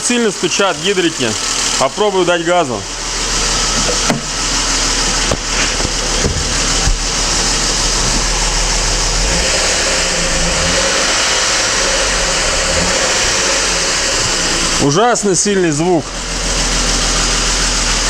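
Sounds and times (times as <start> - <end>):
engine revving and idling: 0.0 - 18.0
valve lifter knocking: 3.7 - 8.6.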